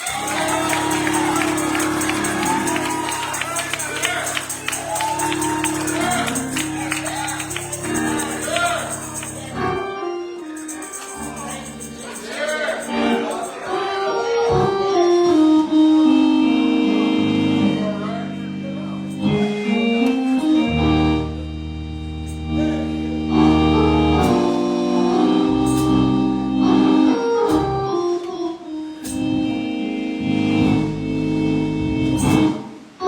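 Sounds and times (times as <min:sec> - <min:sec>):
organ playing held chords: 0:00.0 - 0:33.0
low bass notes: 0:20.5 - 0:28.0, 0:29.1 - 0:32.5.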